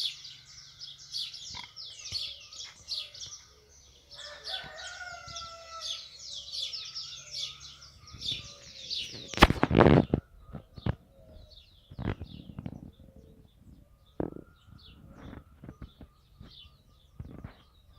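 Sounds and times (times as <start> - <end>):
songbirds chirping and singing: 0.0 - 17.9.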